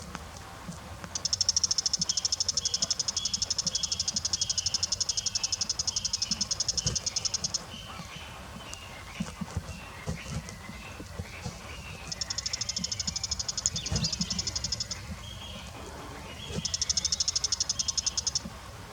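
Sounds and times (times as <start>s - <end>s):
shrike rattling call: 12.0s - 18.4s.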